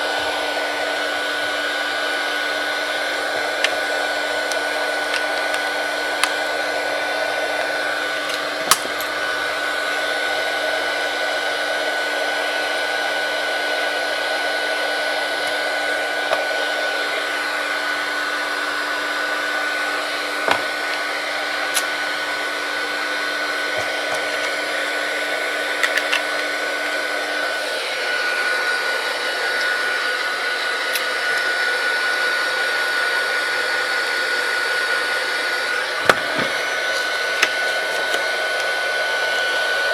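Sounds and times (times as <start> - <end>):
heat gun blowing: 0.0 - 39.9
tools clicking: 25.8 - 26.5.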